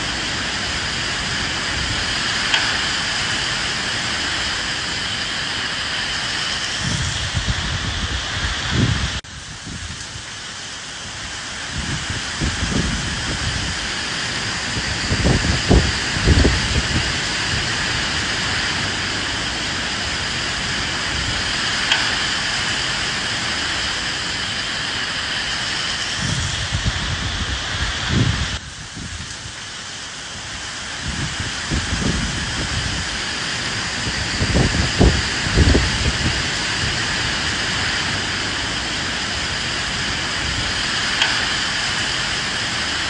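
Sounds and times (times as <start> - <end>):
rain hiss: 0.0 - 43.0
wind gusts: 0.0 - 43.0.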